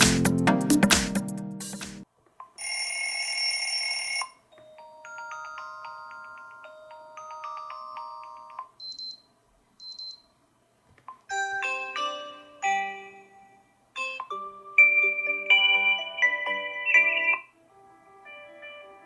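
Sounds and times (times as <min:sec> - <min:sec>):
phone alarm chime tune: 0:02.6 - 0:09.2, 0:14.0 - 0:17.5.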